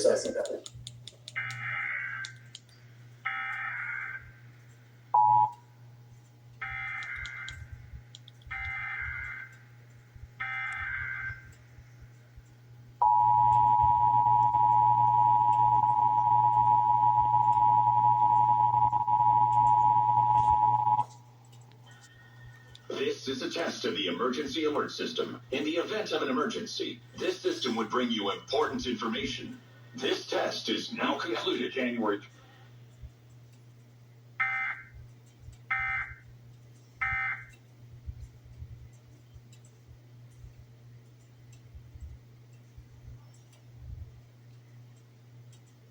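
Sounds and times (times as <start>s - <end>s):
low hum: 4.2s - 45.7s
buzzy digital data tones: 13.0s - 21.1s.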